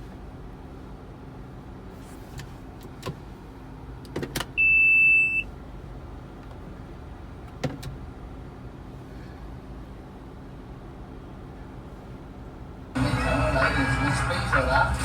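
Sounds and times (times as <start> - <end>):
car low hum: 0.0 - 15.0.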